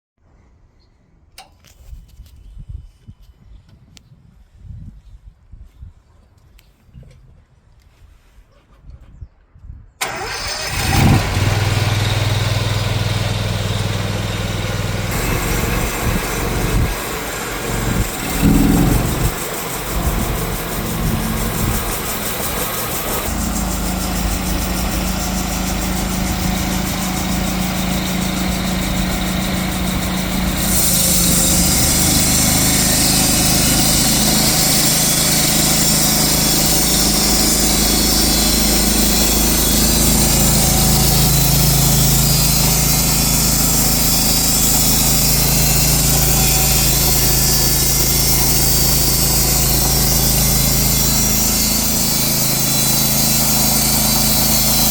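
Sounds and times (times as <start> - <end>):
sawmill engine running: 10.0 - 54.9.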